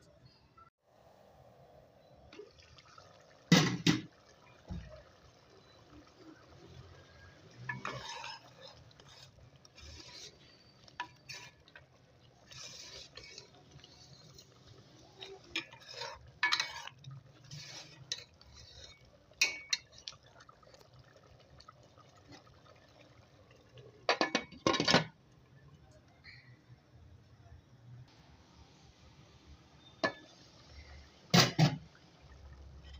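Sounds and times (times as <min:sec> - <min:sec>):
spoon scraping a cooking pot: 0:07.5 - 0:20.0.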